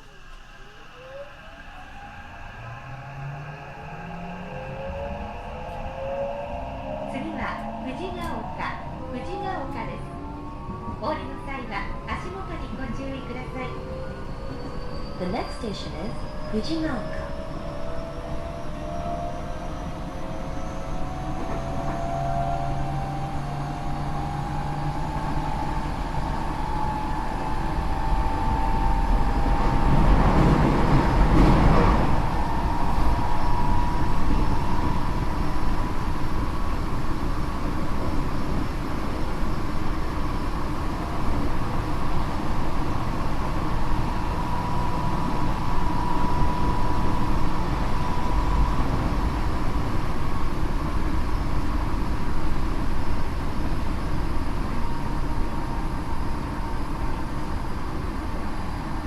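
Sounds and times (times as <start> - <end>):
loud rush of noise: 0.0 - 9.3
wheels rumbling on rail: 0.0 - 59.0.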